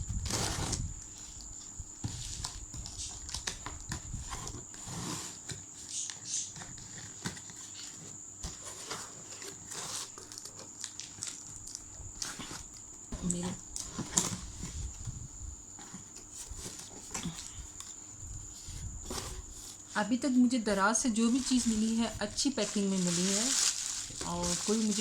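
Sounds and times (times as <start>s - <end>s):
packaging rustling and crinkling: 0.2s - 5.5s, 6.7s - 15.2s, 20.8s - 25.0s.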